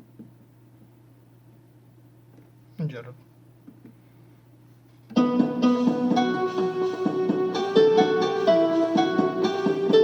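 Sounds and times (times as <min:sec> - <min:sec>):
electronic keyboard plucked notes: 0:05.1 - 0:10.0.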